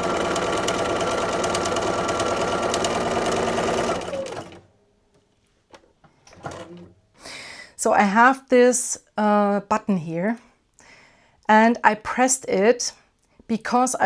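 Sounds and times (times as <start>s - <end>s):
sewing machine stitching: 0.0s - 4.7s, 6.3s - 6.9s.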